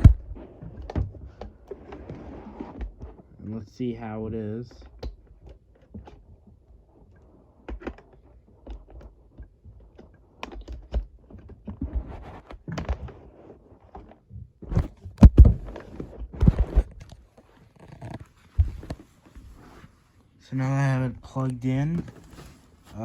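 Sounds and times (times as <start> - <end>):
mini fridge being handled: 0.0 - 3.4, 13.8 - 20.0, 20.8 - 23.0.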